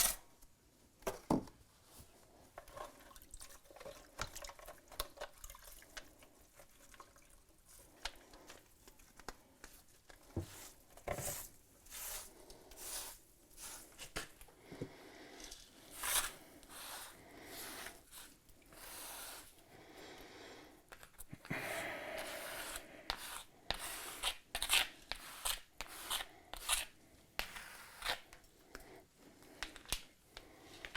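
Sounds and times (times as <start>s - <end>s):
trowel scraping wet mortar: 15.9s - 19.5s, 22.2s - 28.3s.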